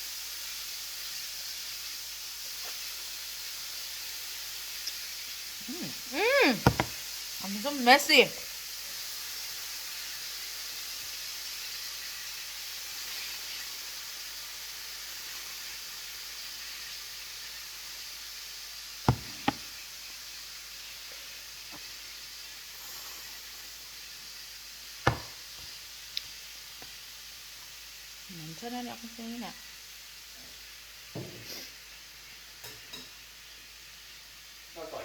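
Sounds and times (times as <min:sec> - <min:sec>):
food sizzling in a pan: 0:00.0 - 0:35.0
sharp knocks: 0:06.6 - 0:07.0, 0:19.1 - 0:19.6, 0:25.1 - 0:25.4.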